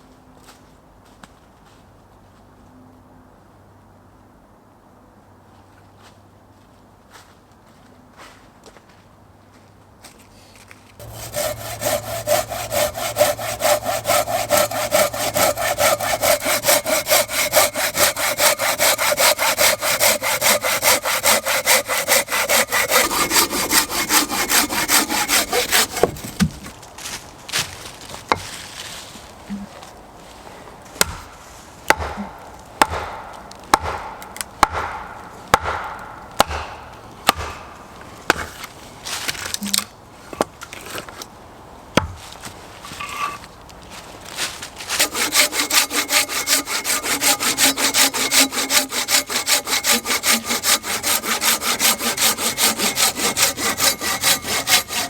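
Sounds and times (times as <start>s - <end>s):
hand saw cutting wood: 11.0s - 26.8s, 44.3s - 55.0s
sharp knocks: 31.9s - 37.7s.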